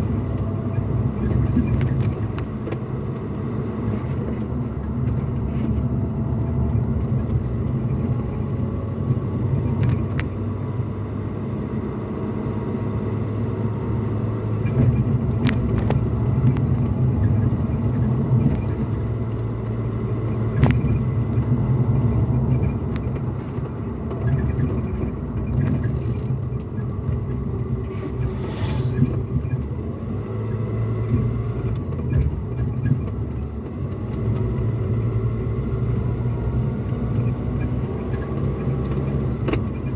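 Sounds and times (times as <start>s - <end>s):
engine and road rumble: 0.0s - 39.9s
brief hiss: 27.9s - 29.2s.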